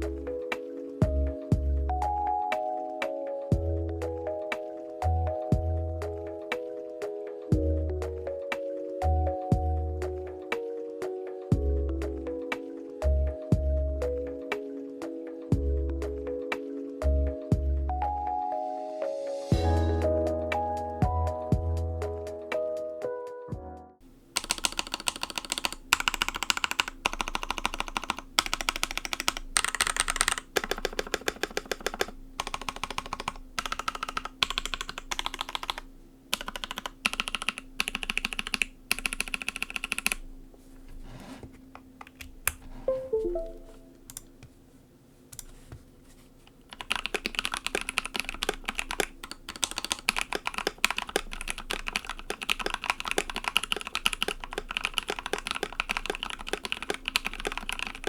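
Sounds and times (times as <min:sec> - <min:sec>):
typing on mechanical keyboard: 0:24.4 - 0:40.2, 0:46.5 - 0:58.0.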